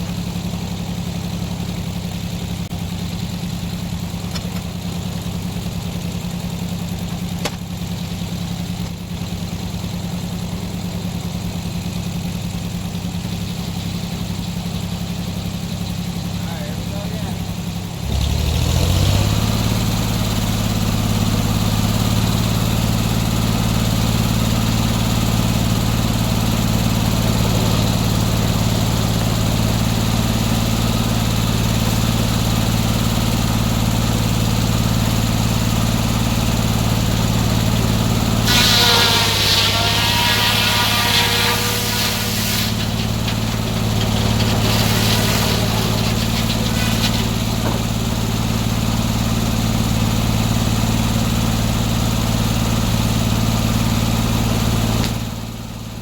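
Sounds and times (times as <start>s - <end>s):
gas engine running sawmill: 0.0s - 56.0s
harsh wavering high-pitched screech: 38.4s - 47.6s.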